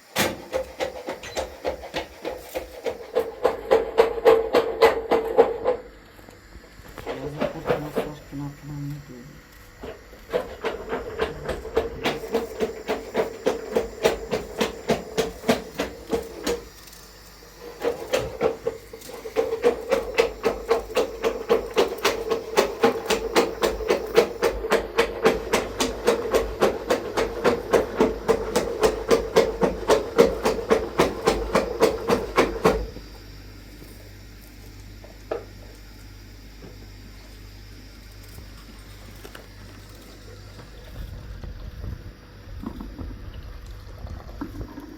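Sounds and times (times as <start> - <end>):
rapid regular knocking: 17.6 - 32.9.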